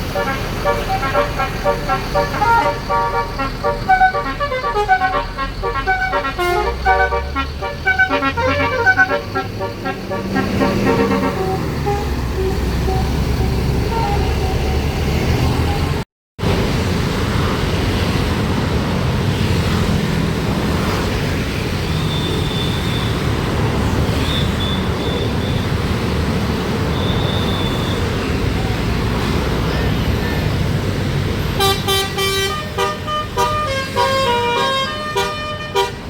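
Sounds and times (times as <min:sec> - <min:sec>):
multi-tone bus horn melody: 0:00.0 - 0:16.0, 0:31.6 - 0:36.0
bus engine rumble: 0:00.0 - 0:36.0
road traffic: 0:00.0 - 0:36.0.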